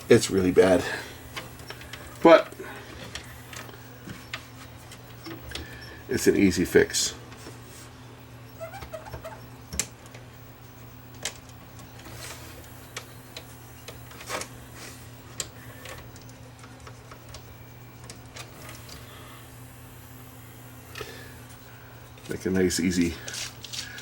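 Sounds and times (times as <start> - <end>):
steady low hum: 0.0 - 24.0.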